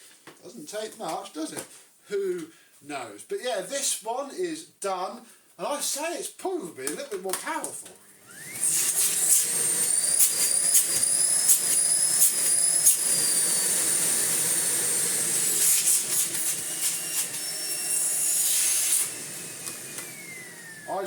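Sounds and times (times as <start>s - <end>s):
vacuum cleaner motor whine: 8.1s - 21.0s.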